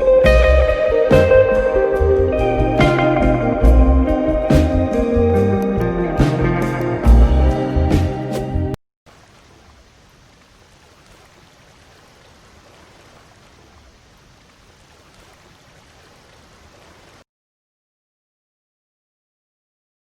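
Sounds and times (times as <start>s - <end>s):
stream flowing: 9.1s - 17.2s.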